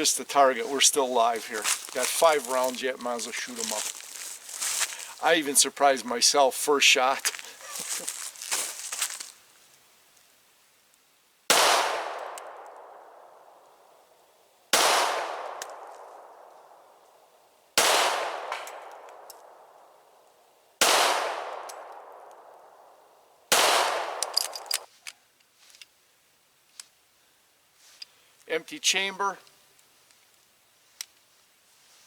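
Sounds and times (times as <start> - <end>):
pistol shots with echo: 11.5 - 13.2, 14.8 - 16.4, 17.8 - 19.0, 20.8 - 21.9, 23.5 - 24.3.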